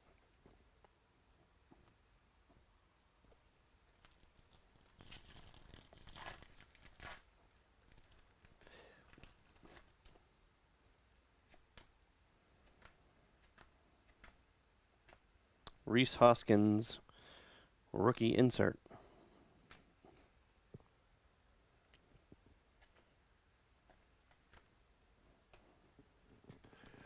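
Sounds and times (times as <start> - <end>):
foil pack tearing: 4.8 - 7.3
cards rustling and clicking: 7.9 - 10.2, 12.6 - 14.4.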